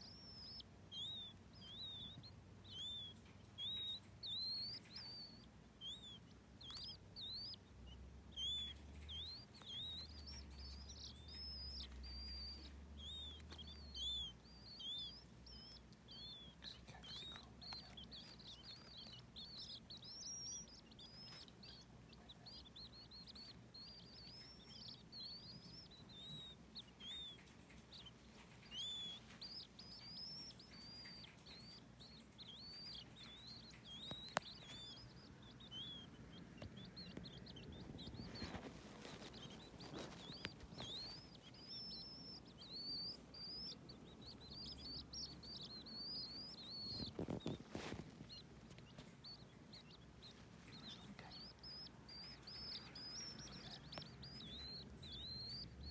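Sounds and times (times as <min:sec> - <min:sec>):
baby birds peeping: 0:00.0 - 0:55.9
rustling: 0:00.0 - 0:55.9.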